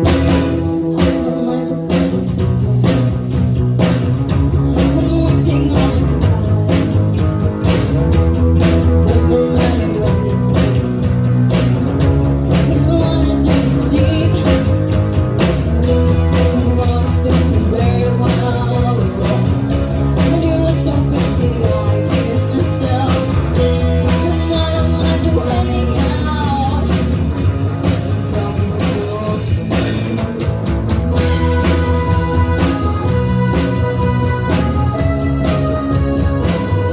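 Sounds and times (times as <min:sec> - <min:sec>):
person singing: 0:00.0 - 0:08.0, 0:08.7 - 0:11.0, 0:12.3 - 0:15.0, 0:15.9 - 0:30.4
electric guitar: 0:00.0 - 0:36.9
heavy bass: 0:00.0 - 0:36.9
steady drum beat: 0:00.0 - 0:36.9.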